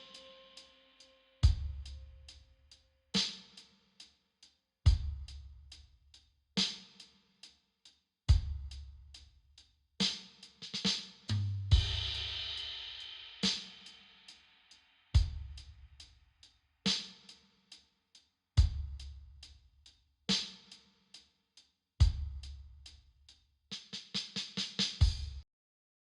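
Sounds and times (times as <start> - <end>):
cymbal wash: 0.0 - 2.1
light hi-hat ticks: 0.0 - 25.4
heavy low kick drum: 1.4 - 2.0, 4.9 - 5.4, 8.3 - 8.8, 11.6 - 12.3, 15.2 - 15.7, 18.6 - 19.2, 22.0 - 22.6, 25.0 - 25.4.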